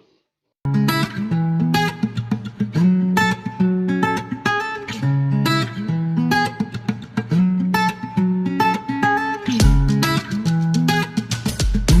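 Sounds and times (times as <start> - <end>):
plucked guitar music: 0.7 - 12.0
beat: 9.6 - 12.0.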